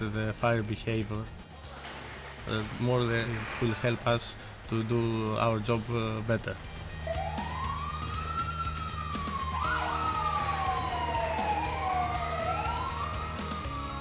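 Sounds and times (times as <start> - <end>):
fire engine sirens wailing: 6.5 - 14.0.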